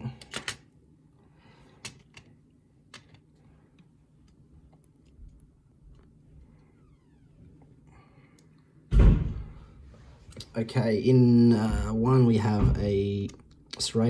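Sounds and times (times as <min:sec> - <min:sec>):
faint low hum: 0:00.0 - 0:14.0.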